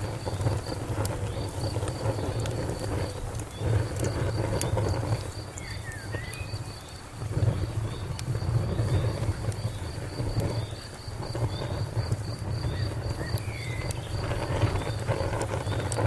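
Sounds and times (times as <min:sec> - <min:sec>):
fire crackling and popping: 0:00.0 - 0:16.0
insect chirping: 0:00.0 - 0:16.0.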